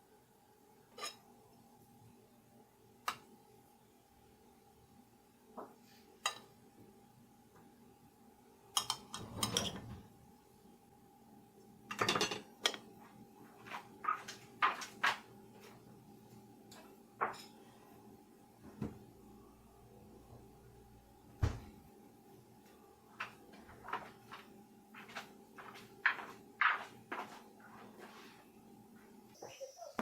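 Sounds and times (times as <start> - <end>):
faint steady hum: 0.0 - 30.0
dishes and utensils clinking: 8.8 - 10.0, 11.9 - 12.9.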